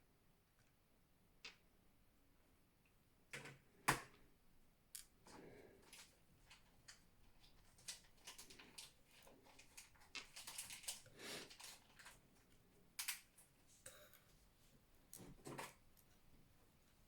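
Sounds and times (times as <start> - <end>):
faint clicks of small objects: 4.9 - 14.3.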